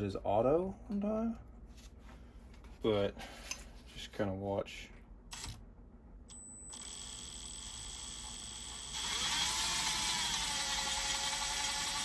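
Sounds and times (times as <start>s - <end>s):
power drill whirring with gear whine: 5.3s - 5.6s, 6.3s - 12.0s.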